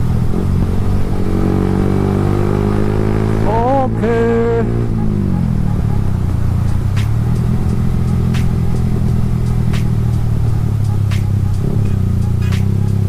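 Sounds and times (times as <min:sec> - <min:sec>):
motorcycle engine cruising: 0:00.0 - 0:13.0
wind and road noise: 0:00.0 - 0:13.0.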